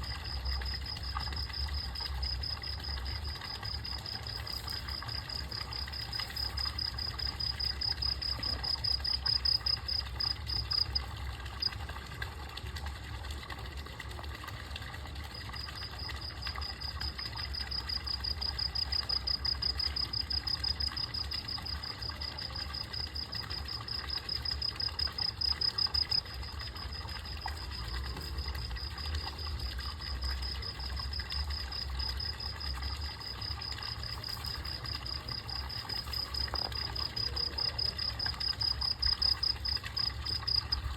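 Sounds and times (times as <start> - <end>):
insect trilling: 0.0 - 11.0, 15.6 - 29.4, 30.2 - 40.9.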